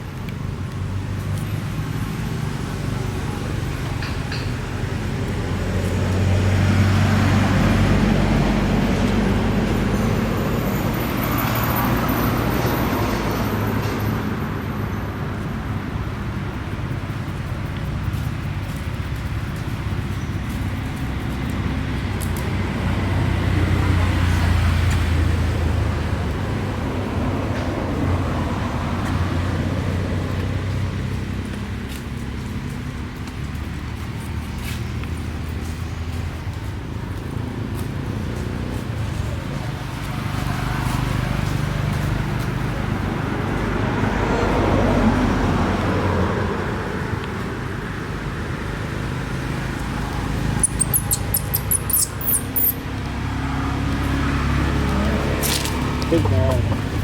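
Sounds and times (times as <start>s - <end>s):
low engine rumble: 0.0s - 57.0s
outdoor noise: 0.0s - 57.0s
traffic noise: 0.0s - 57.0s
vehicle passing: 0.5s - 57.0s
very high short squeaks: 50.4s - 52.9s.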